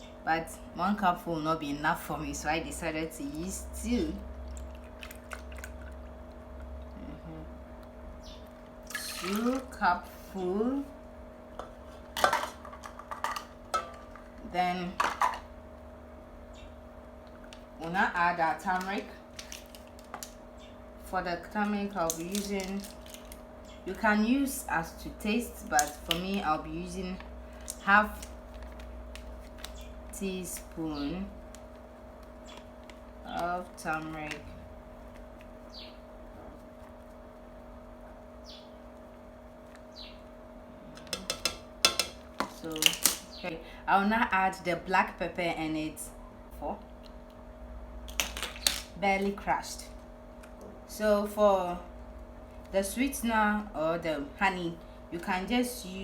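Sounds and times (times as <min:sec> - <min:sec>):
steady electrical hum: 0:00.0 - 0:56.0
bird chirping: 0:08.2 - 0:08.5, 0:35.7 - 0:36.1, 0:38.4 - 0:38.8, 0:39.9 - 0:40.3
utensils clinking against a pot: 0:41.0 - 0:43.2.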